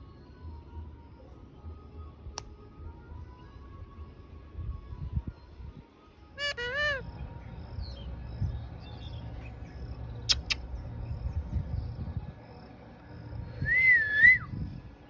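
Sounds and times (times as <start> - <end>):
parrot whistled call: 6.4 - 7.0, 10.3 - 10.6
low rumble: 7.0 - 15.0
sharp clicks: 10.3 - 10.6.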